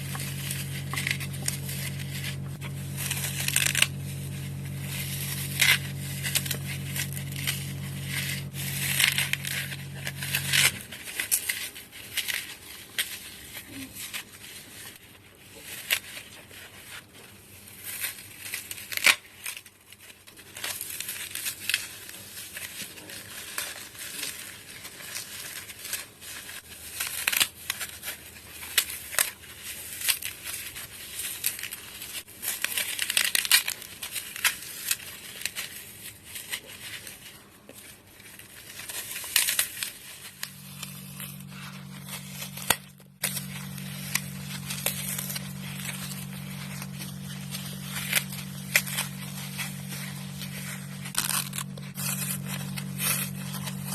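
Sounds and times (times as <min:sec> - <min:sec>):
steady low hum: 0:00.0 - 0:14.8, 0:38.2 - 0:53.9
floral foam crunching: 0:00.0 - 0:53.9.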